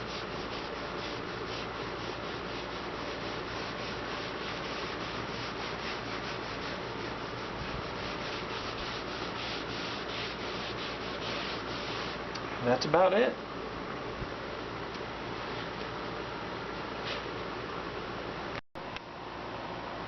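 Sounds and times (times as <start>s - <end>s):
rag rubbing on metal: 0.0s - 12.3s.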